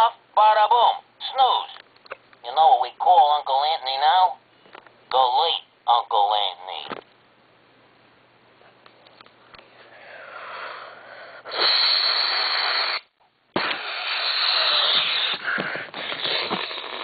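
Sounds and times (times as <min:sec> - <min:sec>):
person wheezing: 0:10.0 - 0:17.0.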